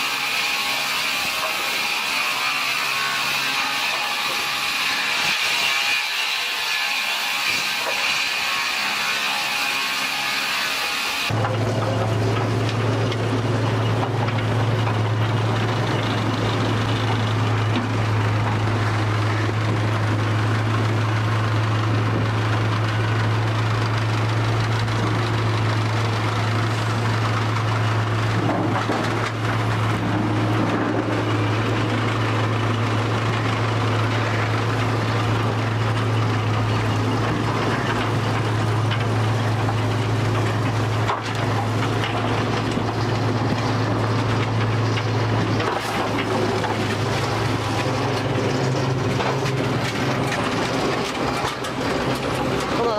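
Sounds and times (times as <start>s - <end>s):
noisy machinery rumble: 0.0s - 52.9s
machinery low hum: 11.3s - 52.9s.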